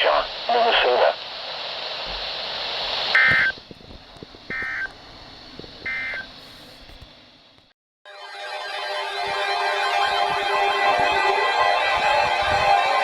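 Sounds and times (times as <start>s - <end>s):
radio static: 0.0s - 7.1s, 10.0s - 13.0s
electronic data bursts: 3.1s - 3.6s, 4.4s - 5.0s, 5.8s - 6.4s
music: 8.1s - 13.0s.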